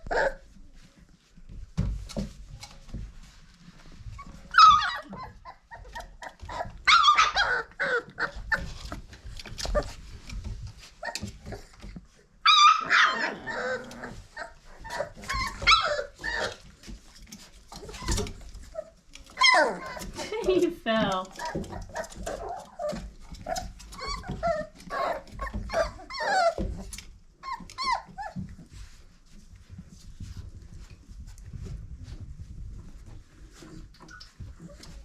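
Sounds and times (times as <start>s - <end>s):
knocks and scuffles of puppies: 0.0s - 12.4s, 13.4s - 35.0s
puppies yipping and whining: 3.9s - 20.3s, 21.3s - 29.0s.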